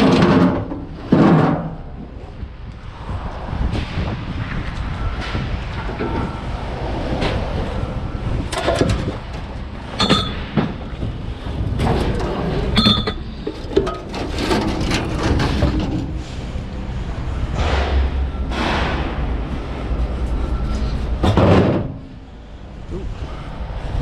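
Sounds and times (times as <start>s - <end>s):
low machinery rumble: 0.0s - 24.0s
scrap metal clanking: 10.0s - 10.8s, 11.6s - 16.6s.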